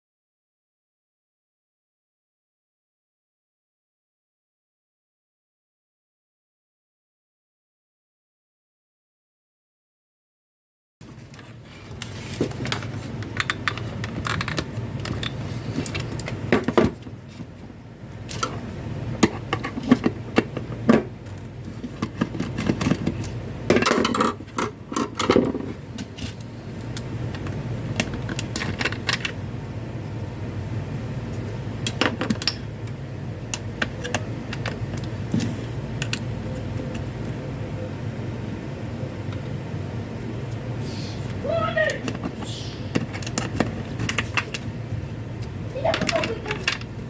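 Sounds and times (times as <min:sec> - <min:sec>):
steady low hum: 0:11.0 - 0:47.0.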